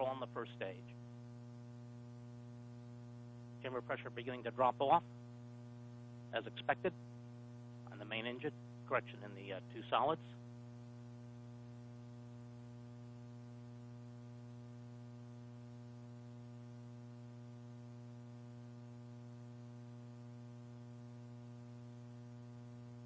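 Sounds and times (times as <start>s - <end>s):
electrical hum: 0.0s - 23.0s
faint hiss: 6.3s - 6.9s.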